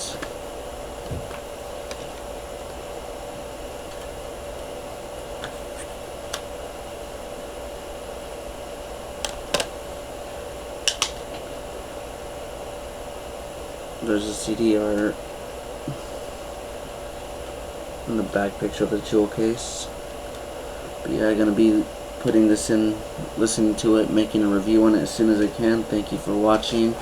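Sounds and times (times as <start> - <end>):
fan-like hum: 0.0 - 27.0
plastic case clicks and taps: 9.2 - 9.7.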